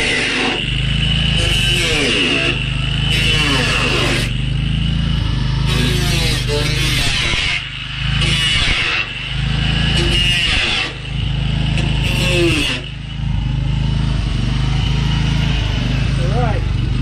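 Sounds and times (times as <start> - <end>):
grinder cutting sheet metal: 0.0 - 13.8
steady low hum: 0.0 - 17.0.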